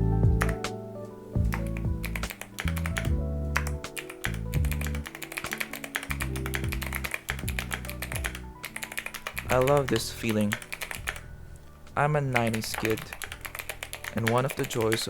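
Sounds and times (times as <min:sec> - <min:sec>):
background music with bass line: 0:00.0 - 0:05.1, 0:06.1 - 0:08.6
mechanical keyboard clicks: 0:01.5 - 0:11.2, 0:12.4 - 0:15.0.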